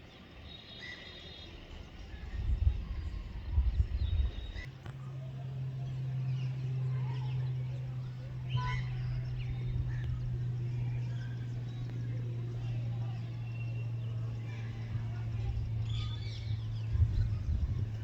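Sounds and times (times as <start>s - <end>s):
steady low hum: 2.0s - 18.0s
bird chirps: 3.7s - 18.0s.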